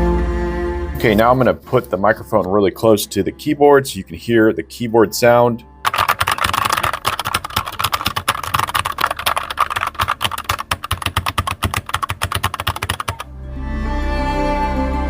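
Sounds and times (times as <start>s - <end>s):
mechanical keyboard typing: 5.9s - 13.2s.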